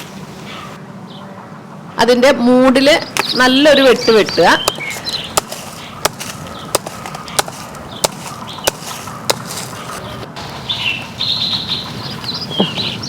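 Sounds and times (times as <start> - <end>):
small birds chirping: 0.0 - 1.4, 2.8 - 13.0
knife chopping fruit stalk: 4.6 - 10.0.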